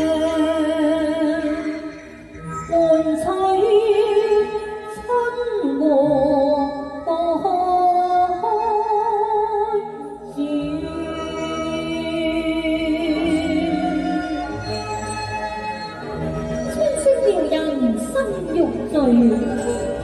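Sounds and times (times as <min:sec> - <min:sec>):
woman singing with vibrato: 0:02.7 - 0:14.4
instrumental accompaniment: 0:10.4 - 0:20.0.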